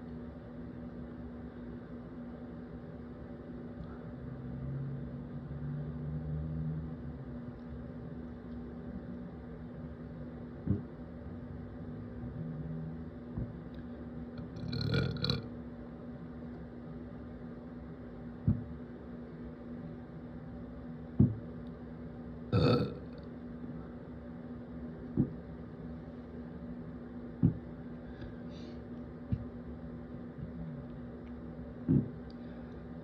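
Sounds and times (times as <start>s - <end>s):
person burping: 14.4s - 15.4s, 22.6s - 23.2s.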